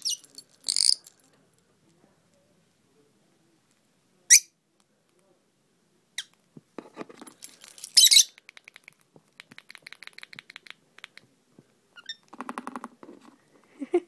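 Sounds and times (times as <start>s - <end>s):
parrot squeaking and chattering: 0.0s - 1.1s, 8.0s - 9.0s, 12.0s - 12.3s
keys jingling: 0.0s - 1.3s, 7.3s - 8.2s.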